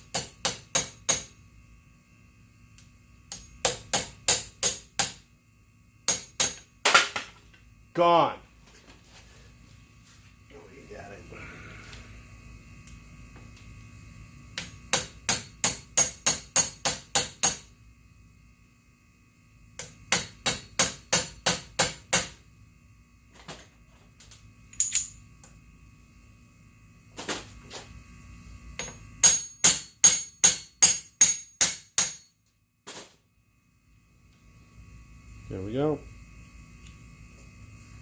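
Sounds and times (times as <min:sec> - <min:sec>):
hammer tapping on metal: 0:28.8 - 0:32.3.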